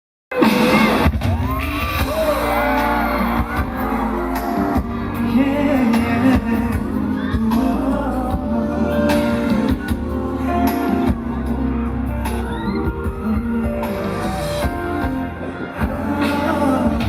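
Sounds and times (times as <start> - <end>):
live pop music over speakers: 0.3 - 17.0
person singing: 0.3 - 17.0
audience shouting and whooping: 0.4 - 8.3, 11.4 - 17.0.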